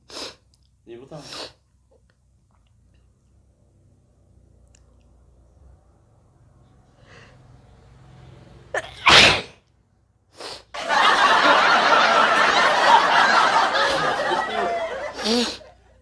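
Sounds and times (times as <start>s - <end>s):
person sneezing: 8.8s - 9.6s, 15.2s - 15.7s
sharp intake of breath: 10.4s - 10.7s, 15.2s - 15.7s.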